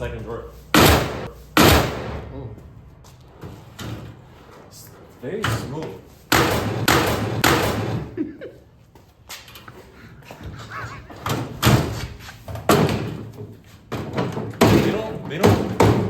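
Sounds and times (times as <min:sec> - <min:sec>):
steel drawers slamming shut: 0:11.2 - 0:13.3, 0:13.9 - 0:16.0.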